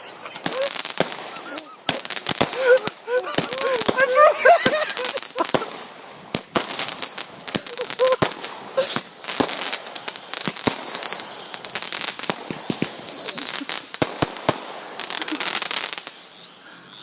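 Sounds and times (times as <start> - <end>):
firework whistle: 0.0 - 14.0
fireworks bangs and crackles: 0.0 - 16.3.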